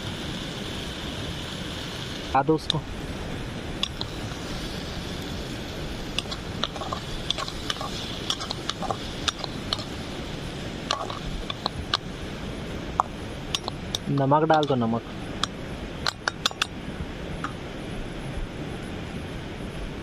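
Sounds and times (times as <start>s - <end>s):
steady hiss: 0.0s - 20.0s
spoon scraping a cooking pot: 6.1s - 10.0s.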